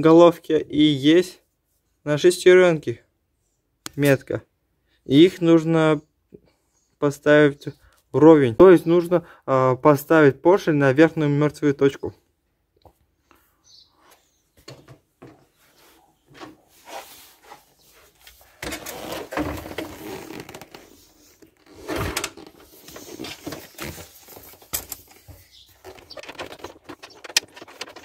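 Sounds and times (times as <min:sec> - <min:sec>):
engine being turned over: 0:21.4 - 0:28.0.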